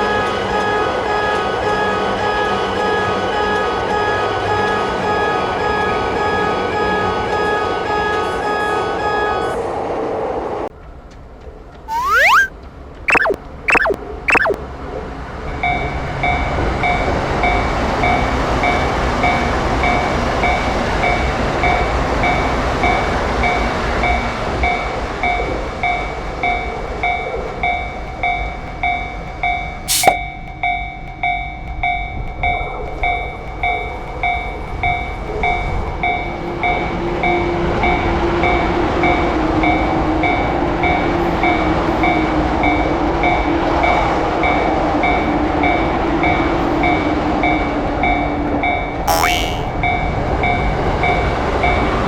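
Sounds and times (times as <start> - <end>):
sharp click: 29.9 - 30.2.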